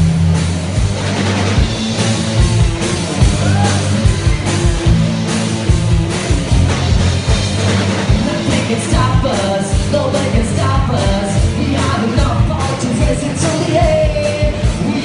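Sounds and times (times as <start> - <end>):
drums beating: 0.0 - 15.0
rock band playing live: 0.0 - 15.0
person singing: 8.1 - 15.0.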